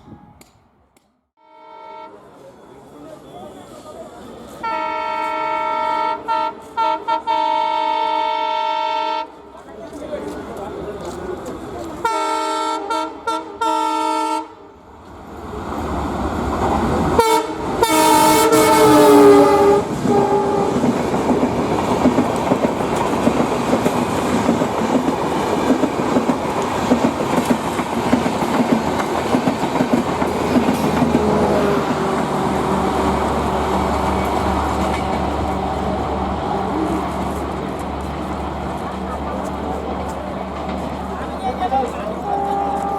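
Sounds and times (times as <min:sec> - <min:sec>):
locomotive horn blasts: 0:01.4 - 0:02.2, 0:04.6 - 0:09.4, 0:12.0 - 0:14.6, 0:17.2 - 0:20.9, 0:42.2 - 0:42.9
train rumble: 0:14.9 - 0:42.9
train wheels clattering: 0:18.3 - 0:42.9.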